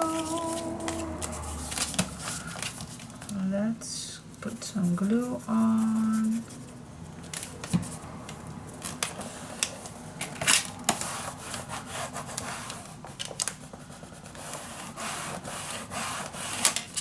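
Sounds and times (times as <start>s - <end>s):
paper rustling: 0.0s - 3.4s.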